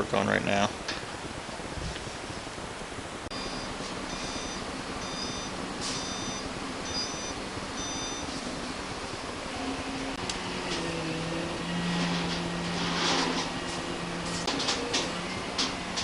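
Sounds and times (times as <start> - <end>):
steady background hum: 0.0 - 16.0
short high electronic beeps: 3.3 - 8.3.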